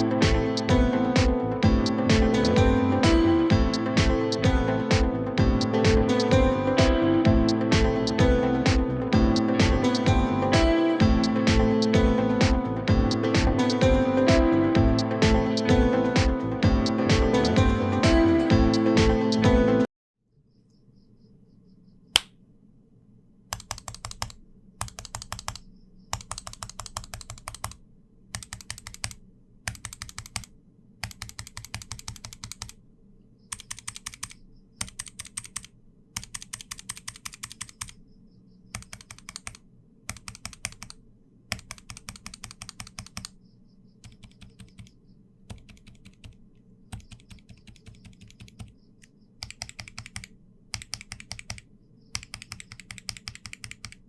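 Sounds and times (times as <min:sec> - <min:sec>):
mechanical keyboard typing: 0:23.5 - 0:27.8, 0:28.4 - 0:32.8, 0:33.5 - 0:38.0, 0:38.7 - 0:43.4, 0:44.0 - 0:48.7, 0:49.4 - 0:51.6, 0:52.2 - 0:54.0.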